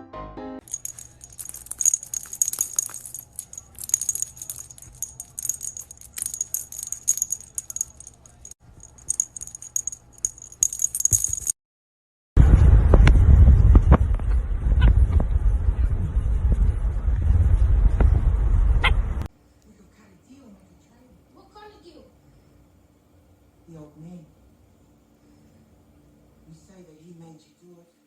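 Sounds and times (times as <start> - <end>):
small bells jingling: 0.6 - 11.6.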